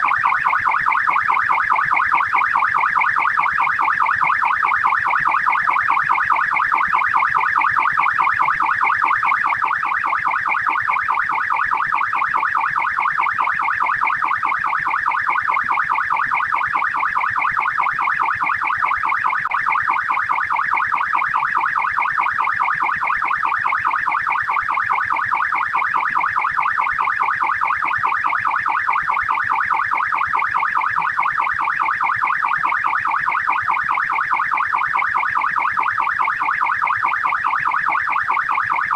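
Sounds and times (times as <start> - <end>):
police siren yelping: 0.0 - 38.9.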